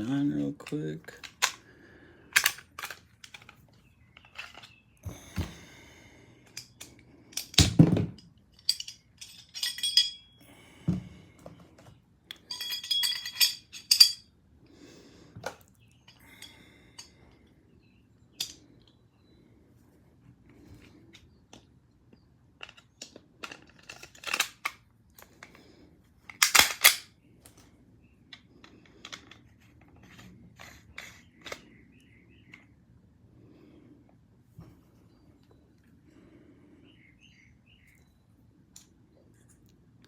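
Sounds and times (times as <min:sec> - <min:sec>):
pistol parts clicking and knocking: 0:00.6 - 0:01.7, 0:02.3 - 0:04.8, 0:06.4 - 0:10.2, 0:22.6 - 0:25.6, 0:26.3 - 0:27.1
ringing metal clinks: 0:08.6 - 0:10.4, 0:12.5 - 0:14.2.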